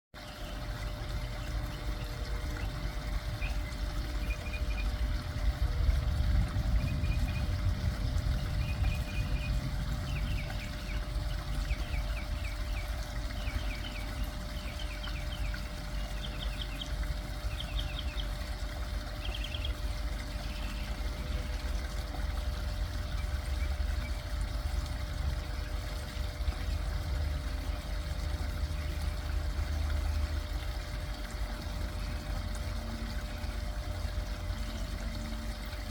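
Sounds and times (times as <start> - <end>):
songbird singing trills: 0.2 - 5.2, 5.8 - 21.8
waterfall trickling and splashing: 0.2 - 35.9
deep low rumble: 5.3 - 11.7.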